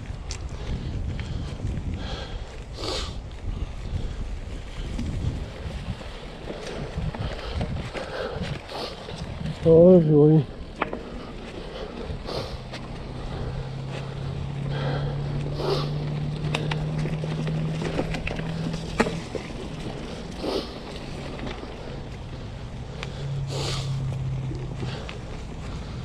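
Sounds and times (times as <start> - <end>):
wind on microphone: 0.0 - 10.6
bike knocks and rattles: 16.1 - 21.8.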